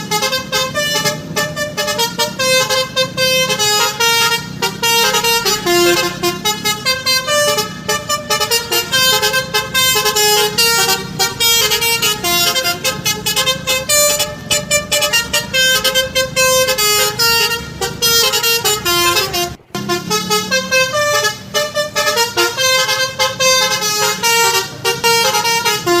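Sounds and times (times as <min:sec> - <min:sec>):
multi-tone bus horn melody: 0:00.0 - 0:26.0.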